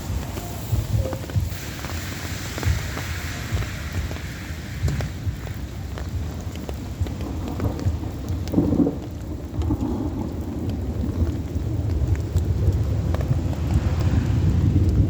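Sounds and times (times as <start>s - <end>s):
heavy rain falling: 0.0s - 15.0s
low rumble of thunder: 0.0s - 15.0s
raindrops ticking: 0.0s - 15.0s.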